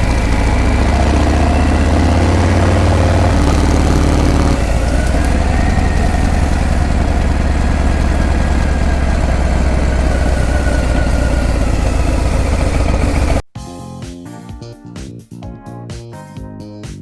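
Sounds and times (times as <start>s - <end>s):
motorcycle engine running: 0.0s - 13.5s.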